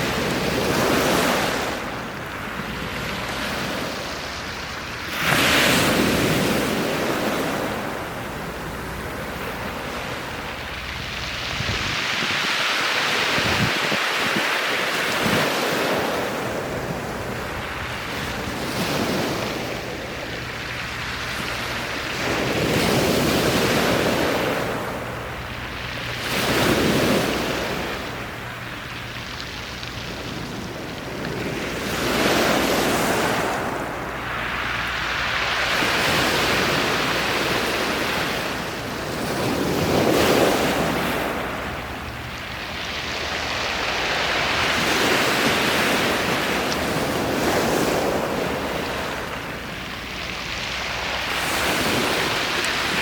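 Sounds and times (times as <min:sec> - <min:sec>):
sea waves breaking on a beach: 0:00.0 - 0:53.0.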